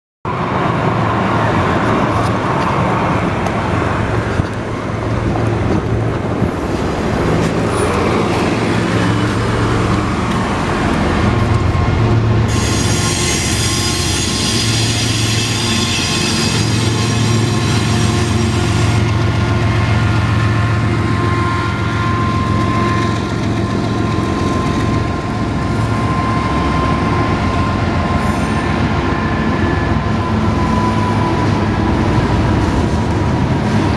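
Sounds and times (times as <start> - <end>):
freight train rumbling past: 0.3 - 33.9
thin steady squeal tone: 11.6 - 19.1, 20.3 - 31.7
metallic wheel squeal: 12.5 - 19.2.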